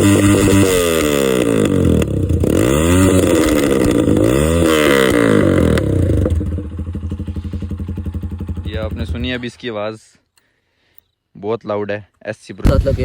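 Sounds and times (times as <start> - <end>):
motorcycle engine revving: 0.0 - 9.5.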